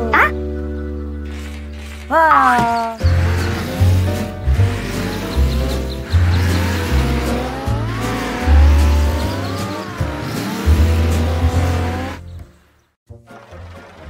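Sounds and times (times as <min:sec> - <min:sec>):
cartoon vehicle sound effects: 0:00.0 - 0:00.4, 0:02.1 - 0:12.3
bass line background music: 0:00.0 - 0:14.0
rising and falling gliding tones: 0:03.2 - 0:12.2.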